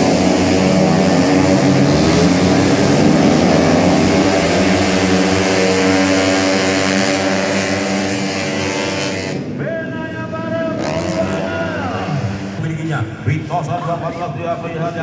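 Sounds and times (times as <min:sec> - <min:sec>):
scooter engines at high revs: 0:00.0 - 0:09.6, 0:10.7 - 0:12.9.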